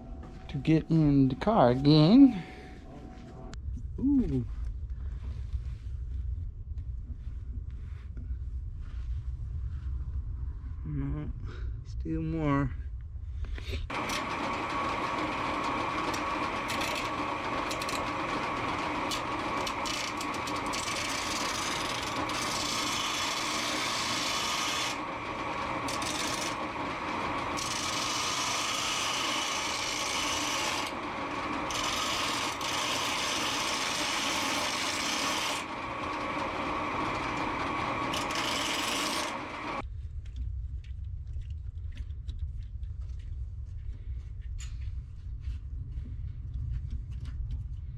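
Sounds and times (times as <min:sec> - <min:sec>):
power tool grinding: 0:13.9 - 0:39.8.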